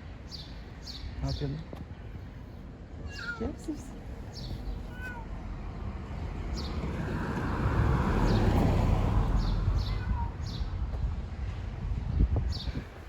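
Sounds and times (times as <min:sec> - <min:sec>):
vehicle passing: 0:05.4 - 0:12.1.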